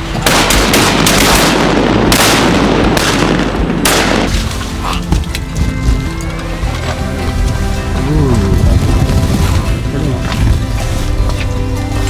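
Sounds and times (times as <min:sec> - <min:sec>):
shotguns firing: 0:00.0 - 0:06.3.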